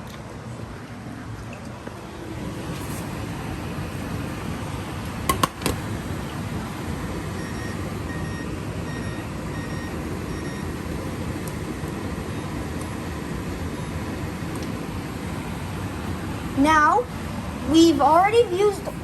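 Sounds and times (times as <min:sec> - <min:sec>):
appliance electronic beeps: 0:07.1 - 0:14.3.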